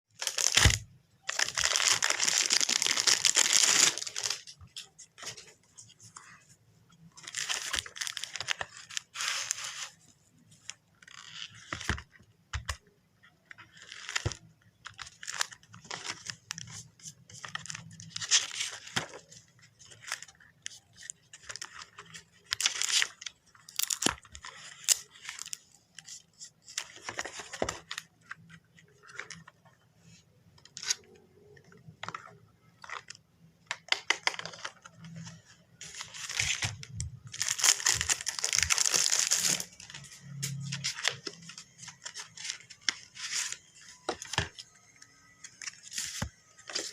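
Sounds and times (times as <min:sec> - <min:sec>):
packaging rustling and tearing: 0:00.2 - 0:05.5, 0:07.2 - 0:10.0, 0:13.7 - 0:25.6, 0:33.9 - 0:46.9.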